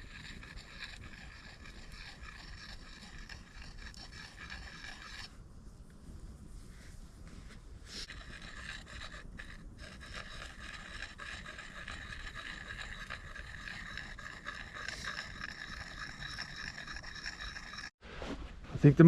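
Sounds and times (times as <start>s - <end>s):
sharpening tool scraping axe blade: 8.0s - 17.9s.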